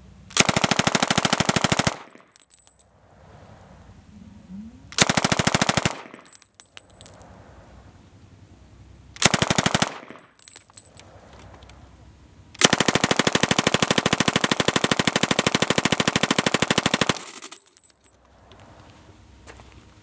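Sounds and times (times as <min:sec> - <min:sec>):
submachine gun firing bursts: 0:00.3 - 0:02.3, 0:05.0 - 0:06.3, 0:09.2 - 0:10.2, 0:12.6 - 0:17.7.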